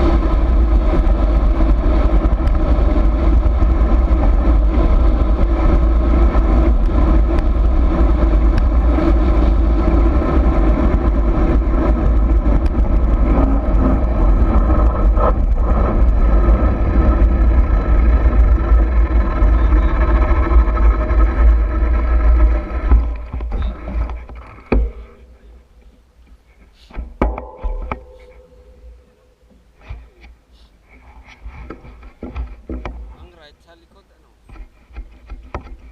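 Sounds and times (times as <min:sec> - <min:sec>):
wind buffeting microphone: 0:00.0 - 0:26.3
vehicle rumbling on dirt trail: 0:00.0 - 0:35.9
sharp clicks and knocks: 0:20.3 - 0:30.4, 0:31.2 - 0:33.4, 0:34.4 - 0:35.9.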